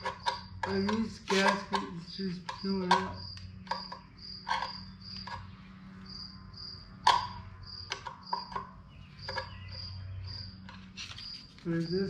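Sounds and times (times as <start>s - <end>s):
screwdriver scraping metal: 0.0s - 5.6s
cricket chirping: 0.0s - 12.0s
steady low hum: 0.0s - 12.0s.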